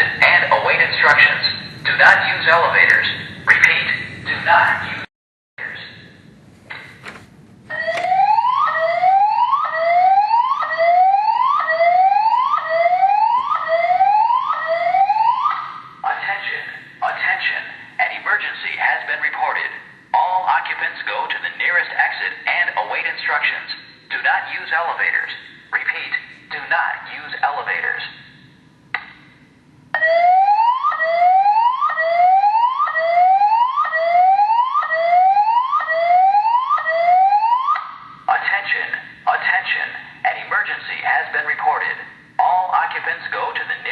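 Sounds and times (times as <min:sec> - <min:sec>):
fire alarm whoop tone: 0:07.7 - 0:15.9, 0:30.0 - 0:38.2.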